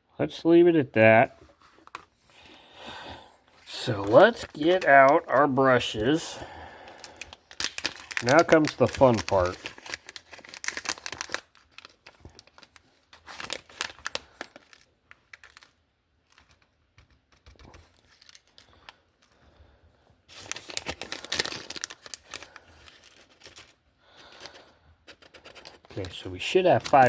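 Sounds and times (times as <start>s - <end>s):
plastic packaging crinkling and tearing: 3.6s - 19.6s, 20.3s - 27.0s.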